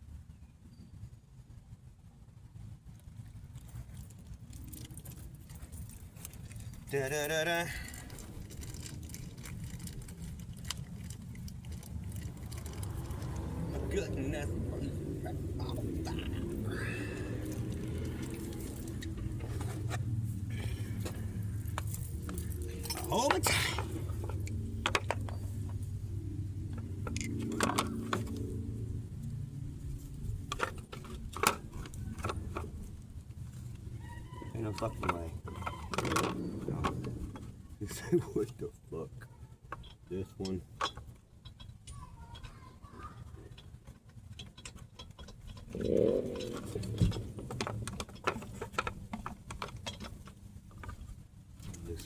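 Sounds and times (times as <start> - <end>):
grunt-like sound: 15.3 - 17.7.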